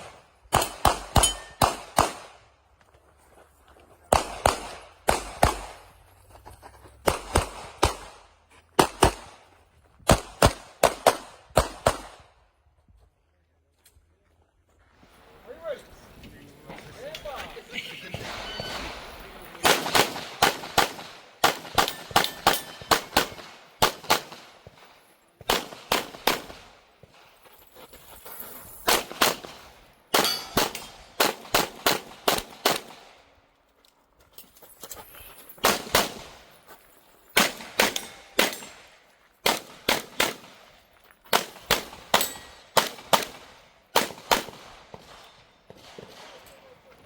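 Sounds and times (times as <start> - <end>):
pistol shots: 0.0 - 2.4, 4.1 - 5.9, 7.0 - 9.4, 10.1 - 12.3, 18.2 - 24.8, 25.4 - 26.8, 28.9 - 33.2, 35.6 - 36.4, 37.4 - 40.7, 41.3 - 46.6.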